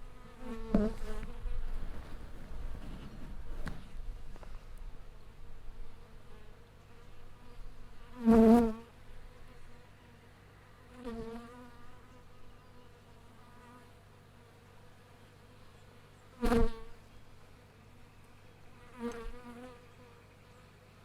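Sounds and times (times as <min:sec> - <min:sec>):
bee flying past: 0:00.0 - 0:14.0, 0:16.4 - 0:17.0, 0:18.8 - 0:20.2.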